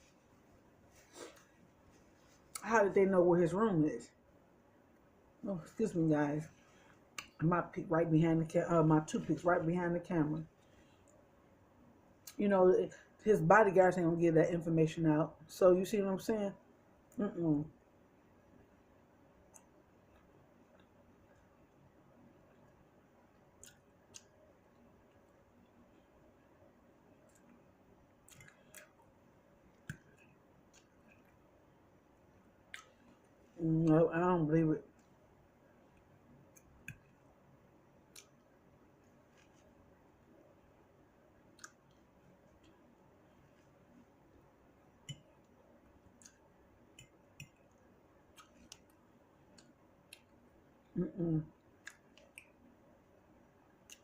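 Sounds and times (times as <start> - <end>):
faint chewing: 27.1 - 31.5, 41.4 - 44.1, 45.0 - 52.7, 53.7 - 54.0.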